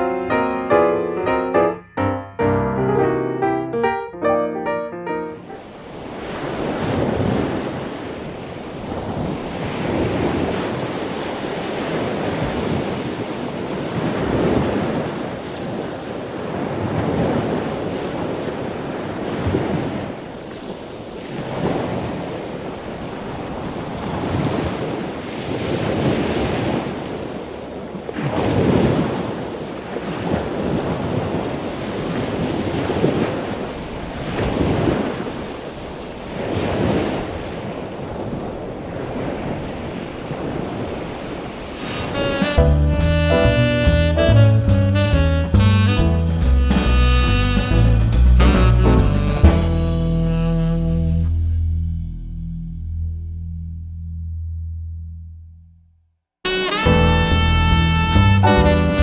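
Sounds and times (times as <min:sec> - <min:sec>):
waves washing onto shore: 0:05.4 - 0:42.6
wind buffeting microphone: 0:05.9 - 0:42.2.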